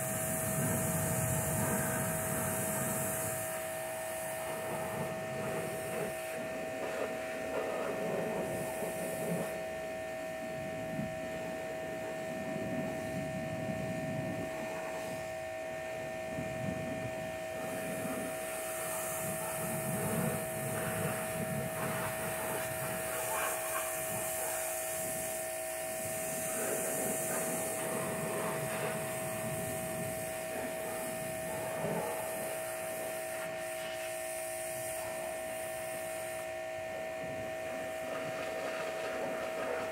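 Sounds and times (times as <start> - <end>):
pressure washer whining: 17.3 - 39.9.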